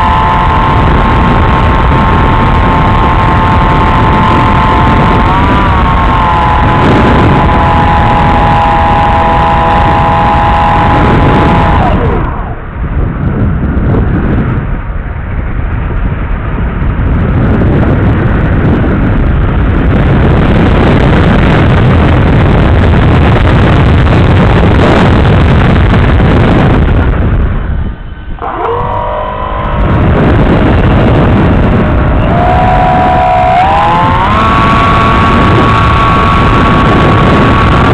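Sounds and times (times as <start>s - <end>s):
model plane motor whine: 0.0s - 12.5s, 28.4s - 37.9s
wind rushing over microphone: 0.0s - 37.9s.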